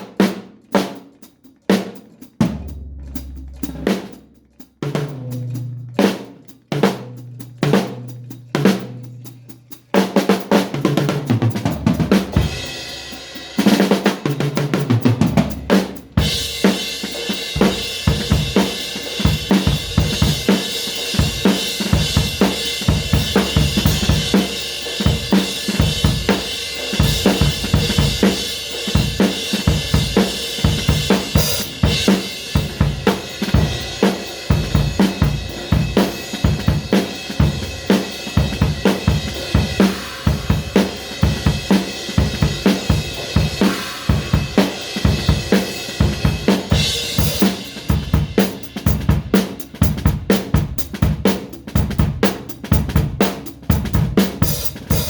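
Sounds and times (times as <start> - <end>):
drum kit groove: 0.0 - 55.0
cymbal crash: 16.2 - 48.7.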